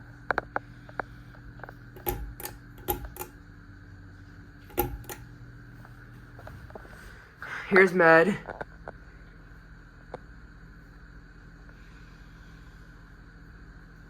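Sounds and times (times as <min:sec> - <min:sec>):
ceiling fan motor humming: 0:00.0 - 0:14.0
sharp clicks and taps: 0:02.0 - 0:03.3, 0:04.7 - 0:05.2.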